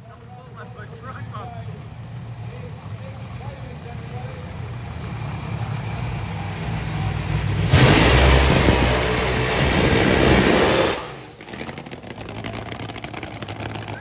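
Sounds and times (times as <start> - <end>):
drag racing car engine: 0.0 - 14.0
very loud engine blast: 0.0 - 14.0.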